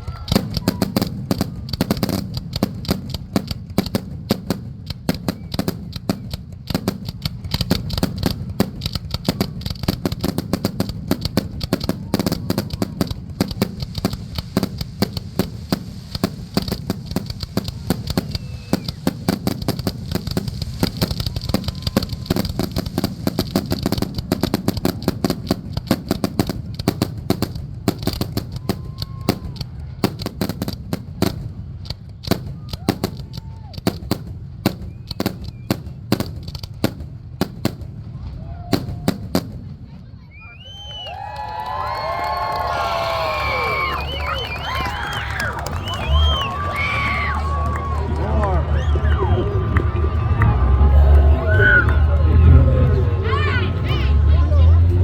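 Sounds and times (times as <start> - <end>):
fireworks bangs and crackles: 0.0 - 55.0
deep rumble of shell bursts: 0.2 - 39.8.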